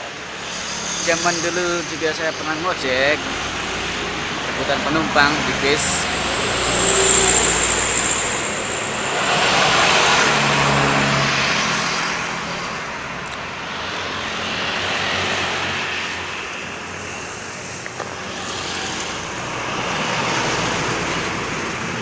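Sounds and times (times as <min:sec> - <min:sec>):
heavy vehicles passing: 0:00.0 - 0:13.0.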